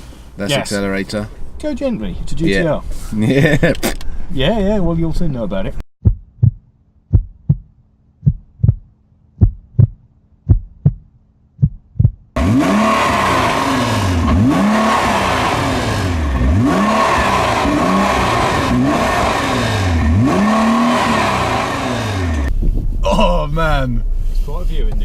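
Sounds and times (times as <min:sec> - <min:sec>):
heartbeat thumps: 0:06.0 - 0:12.4
car engine revving: 0:12.4 - 0:25.0
wind noise: 0:22.5 - 0:25.0.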